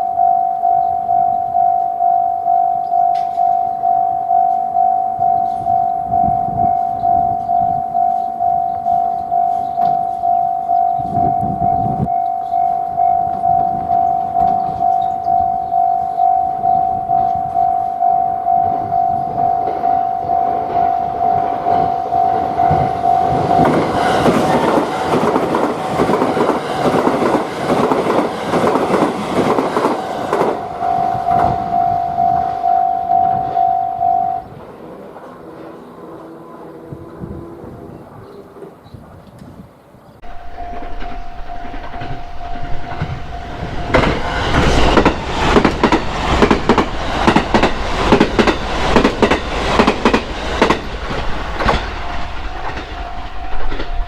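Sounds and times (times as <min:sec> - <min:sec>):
railroad crossing bell ringing: 0:00.0 - 0:34.6, 0:40.2 - 0:54.0
train wheels clattering on rails: 0:19.5 - 0:32.7, 0:40.2 - 0:54.0.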